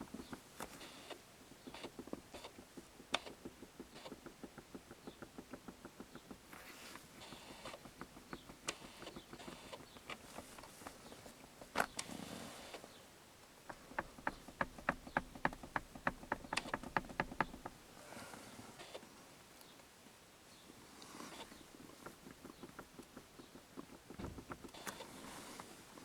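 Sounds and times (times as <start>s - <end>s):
headrest knocking: 1.5s - 12.0s, 13.6s - 17.9s, 21.5s - 25.7s.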